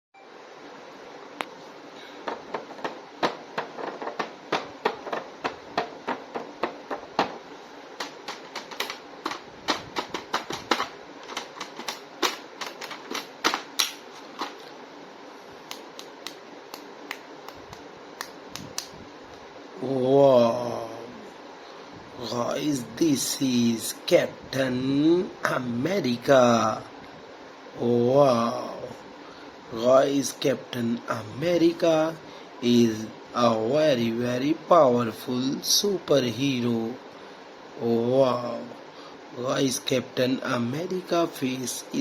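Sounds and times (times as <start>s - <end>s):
plastic packaging clicking: 8.0s - 14.7s.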